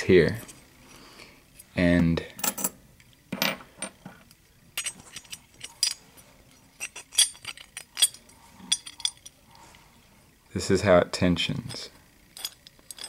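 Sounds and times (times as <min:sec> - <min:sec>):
metal lock parts clicking: 0:04.8 - 0:06.0, 0:06.8 - 0:09.3.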